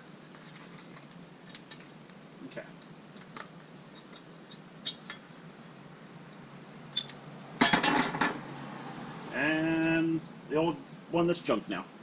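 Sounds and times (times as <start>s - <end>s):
light metallic clinks: 6.3s - 8.2s, 9.2s - 10.2s
metal clattering on metal: 7.0s - 8.4s.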